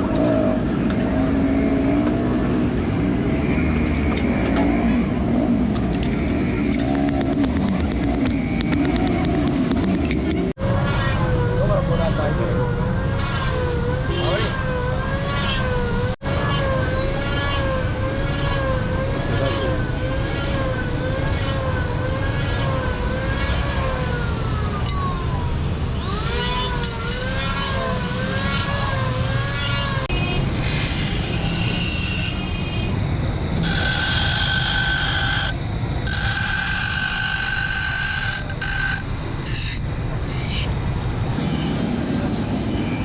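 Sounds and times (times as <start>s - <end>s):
wavering siren: 0.0s - 30.1s.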